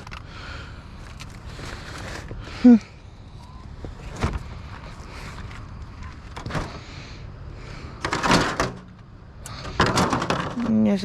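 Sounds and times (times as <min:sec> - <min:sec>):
trash bin scraping clatter: 0:08.0 - 0:09.0, 0:09.6 - 0:11.0.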